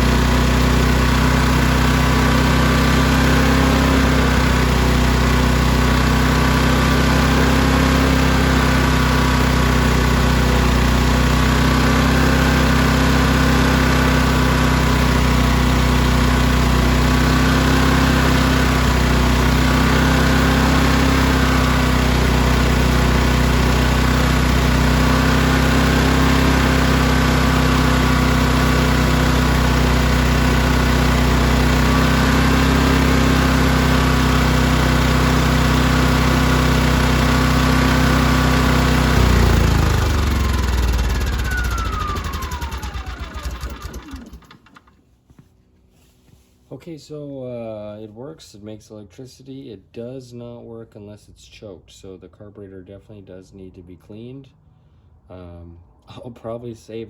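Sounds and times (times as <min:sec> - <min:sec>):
small generator engine running: 0:00.0 - 0:45.1.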